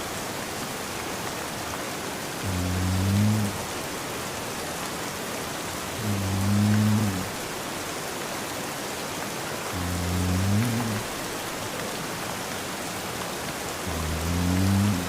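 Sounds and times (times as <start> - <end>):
steady rain: 0.0 - 15.0
man snoring: 2.4 - 3.7, 6.0 - 7.4, 9.7 - 11.2, 13.8 - 15.0.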